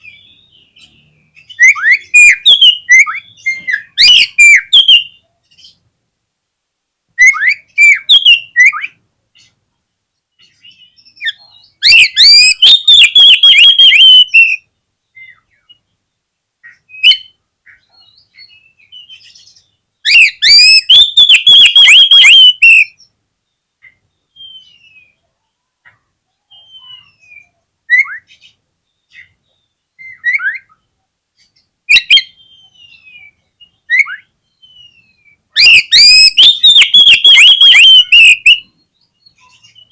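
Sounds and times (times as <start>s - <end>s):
bird singing whistled phrases: 0.0s - 5.2s, 7.2s - 9.0s, 10.4s - 14.6s, 16.8s - 17.4s, 18.0s - 23.1s, 24.3s - 25.2s, 26.5s - 29.3s, 31.9s - 39.9s
bursts of rapid repeated bird notes: 0.0s - 5.2s, 11.8s - 14.7s, 20.1s - 23.1s, 33.8s - 38.7s.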